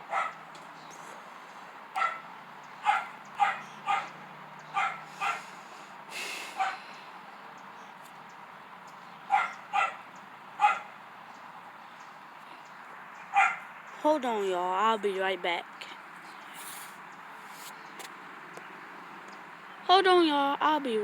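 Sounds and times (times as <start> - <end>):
dog barking: 0.1 - 0.4, 2.0 - 5.5, 6.6 - 6.8, 9.3 - 11.0, 13.3 - 13.7.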